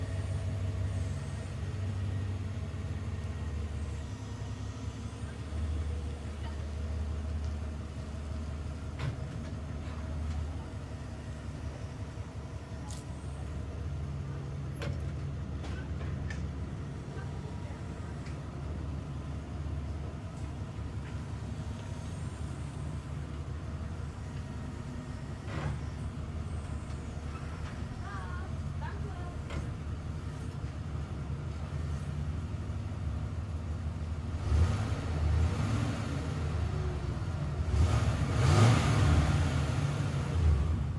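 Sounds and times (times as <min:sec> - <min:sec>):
van engine running steadily: 0:00.0 - 0:40.9.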